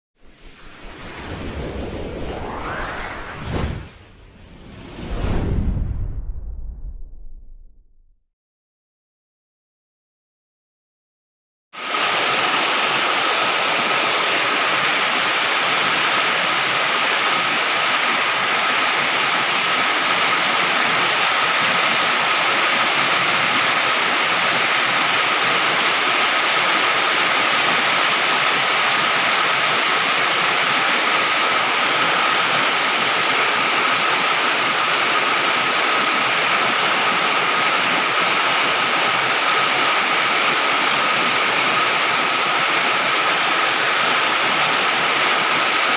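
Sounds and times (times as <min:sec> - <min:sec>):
heavy rain on metal roof: 0:11.8 - 0:45.9.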